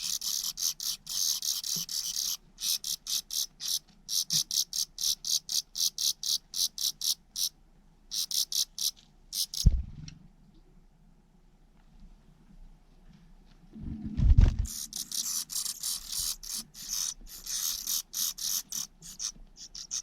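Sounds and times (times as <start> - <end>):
loud thump: 9.6 - 10.2.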